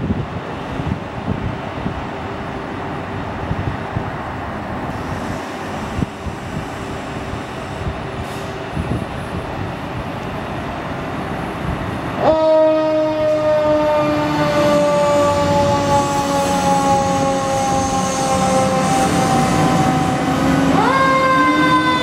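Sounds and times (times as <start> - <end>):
vehicle engine and road noise: 0.0 - 12.4
air horn: 12.2 - 22.0.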